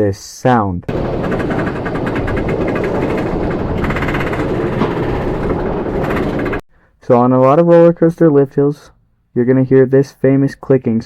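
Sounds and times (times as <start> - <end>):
roller coaster anti-rollback clacking: 0.9 - 6.6
roller coaster rumble: 0.9 - 6.6.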